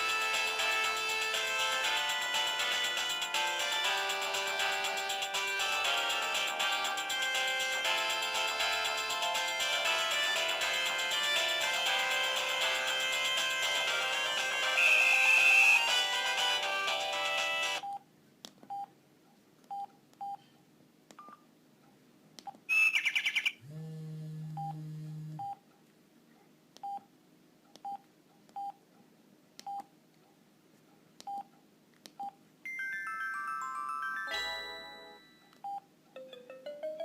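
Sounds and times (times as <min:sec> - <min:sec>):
ringtone melody: 0:00.0 - 0:17.8, 0:32.7 - 0:35.5, 0:36.2 - 0:37.0
loud warbling chirp: 0:22.7 - 0:23.6
low steady buzz: 0:23.6 - 0:25.7.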